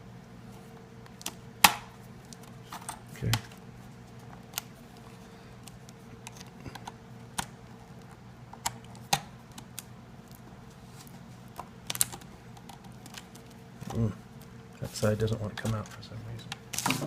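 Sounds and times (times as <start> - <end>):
plastic cover snapping off: 11.8 - 13.4.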